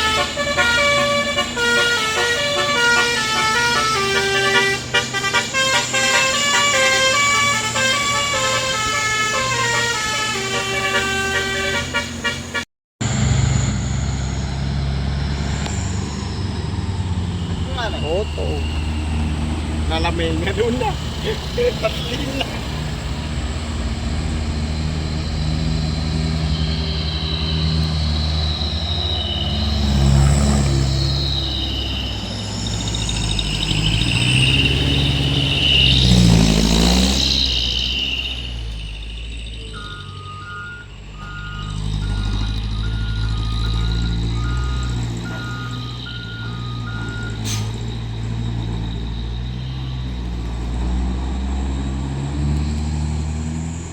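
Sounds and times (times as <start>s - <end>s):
two-tone horn: 0.0s - 12.6s
diesel truck engine running: 0.0s - 53.9s.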